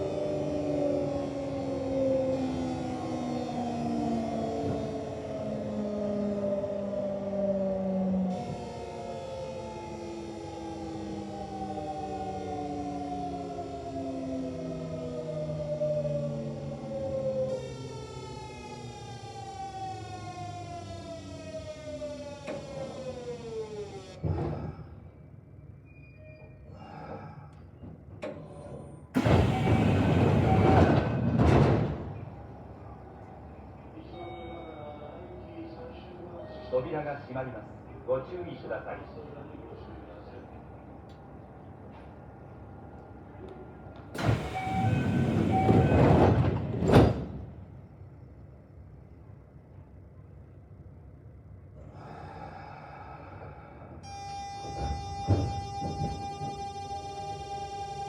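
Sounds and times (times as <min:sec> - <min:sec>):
train inverter whining: 0:00.0 - 0:25.9, 0:27.5 - 0:58.0
door-closing chime beeps: 0:34.1 - 0:35.3, 0:44.2 - 0:46.0, 0:54.0 - 0:57.1.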